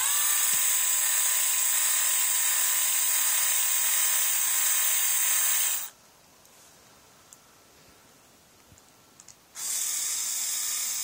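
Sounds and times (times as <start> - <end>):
electric screwdriver running: 0.0 - 5.9, 9.6 - 11.0.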